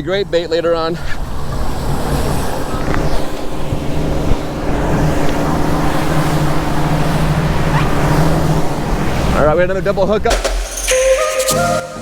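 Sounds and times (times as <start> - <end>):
wind: 0.0 - 10.3
boat engine humming: 1.7 - 9.4.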